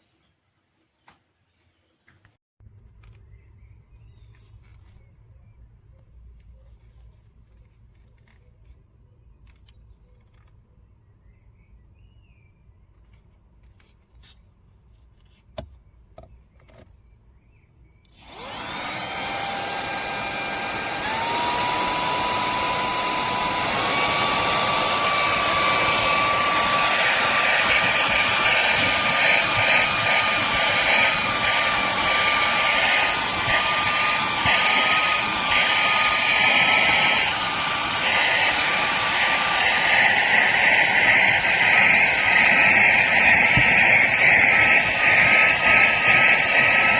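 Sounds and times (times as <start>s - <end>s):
handheld vacuum cleaner running: 18.1s - 46.9s.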